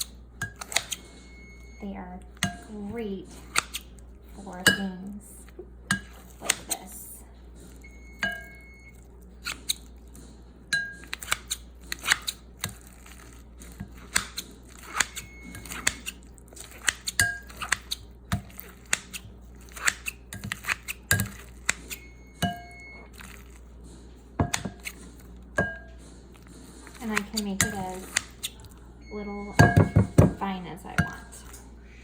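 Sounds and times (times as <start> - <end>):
blades clinking against bowl: 4.4 - 5.0, 10.7 - 11.3, 27.1 - 28.3, 29.5 - 31.7
scissor choppers snipping meat: 14.0 - 22.0, 26.8 - 28.6.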